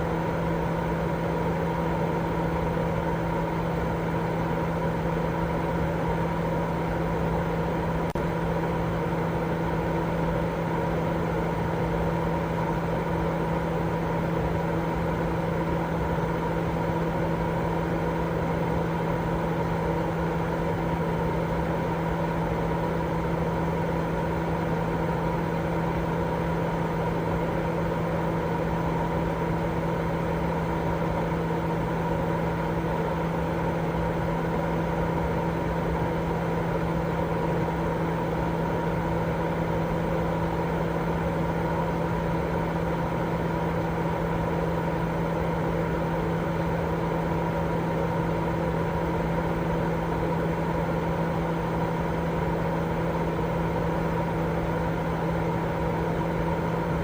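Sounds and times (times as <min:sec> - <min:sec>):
steady white noise: 0:00.0 - 0:57.0.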